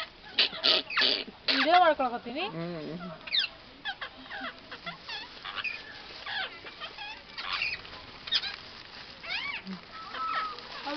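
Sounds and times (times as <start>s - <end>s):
parrot squawking and chirping: 0.0s - 10.9s.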